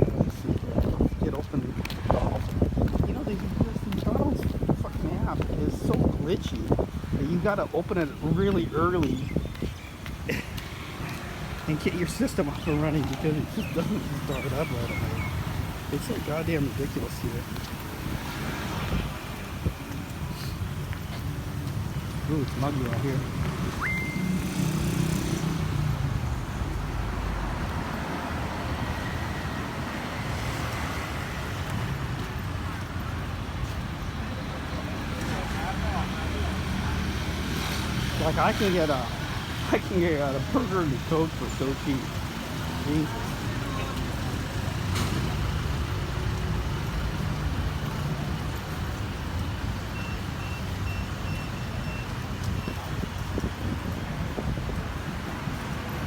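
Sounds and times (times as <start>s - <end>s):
road traffic noise: 0.0s - 56.0s
vehicle engine running nearby: 10.1s - 56.0s
high electronic beeps: 23.7s - 24.6s.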